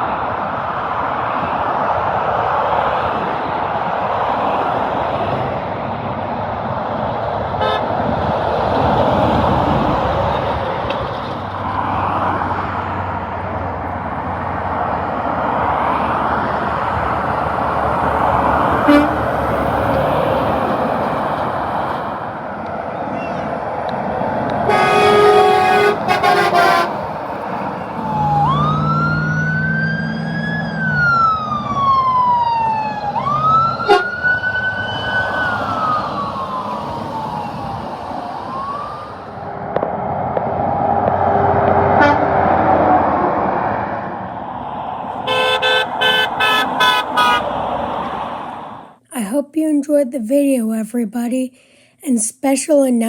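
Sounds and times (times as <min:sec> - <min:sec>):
road traffic passing: 0:00.0 - 0:49.4
truck horn: 0:07.6 - 0:07.9, 0:18.8 - 0:19.5, 0:24.6 - 0:27.7, 0:33.8 - 0:34.4, 0:41.4 - 0:42.4, 0:45.2 - 0:47.8
siren wailing: 0:23.0 - 0:48.4.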